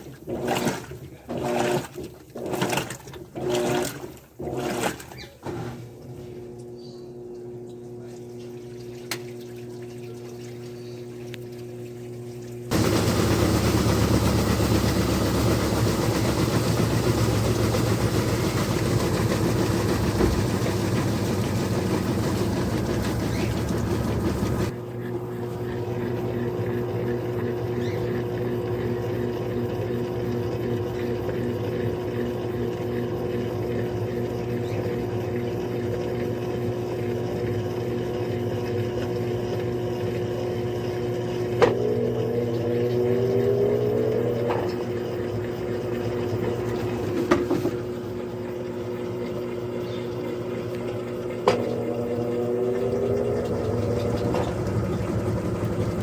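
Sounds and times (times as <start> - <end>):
washing machine humming: 0.0 - 56.0
loud noisy machine sound: 12.7 - 24.7.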